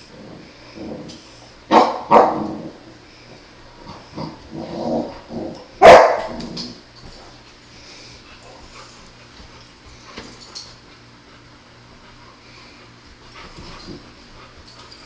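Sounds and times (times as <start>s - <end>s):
puppies barking: 5.8s - 6.3s.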